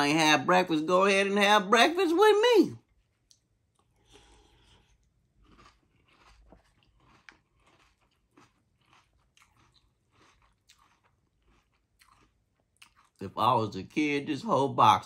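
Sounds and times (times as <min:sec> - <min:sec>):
person chewing crunchy cereal: 0:02.8 - 0:13.8.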